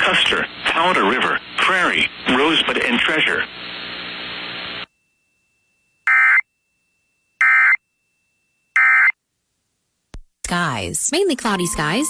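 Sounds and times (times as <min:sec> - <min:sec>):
radio hiss: 0:00.0 - 0:04.9.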